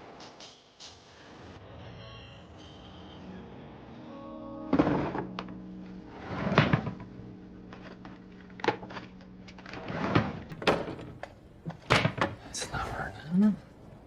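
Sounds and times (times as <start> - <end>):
drawers and cupboard doors clunking: 9.6 - 12.6.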